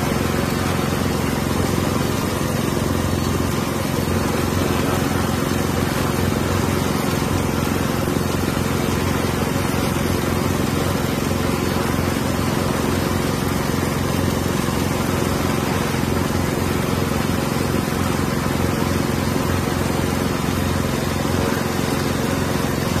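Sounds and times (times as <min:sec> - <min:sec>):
drone propellers humming: 0:00.0 - 0:12.8.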